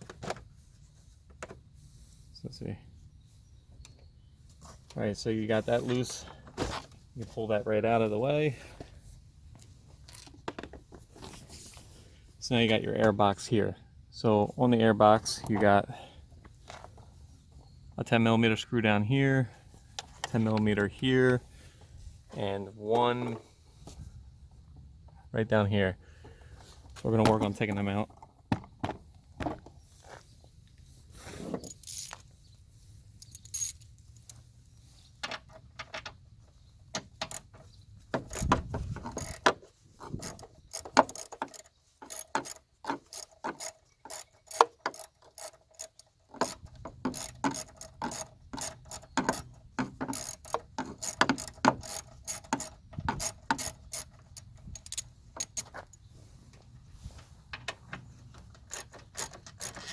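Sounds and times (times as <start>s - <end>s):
ratchet wrench clicking: 31.6s - 32.2s, 33.2s - 34.4s, 38.2s - 55.8s, 58.7s - 59.9s.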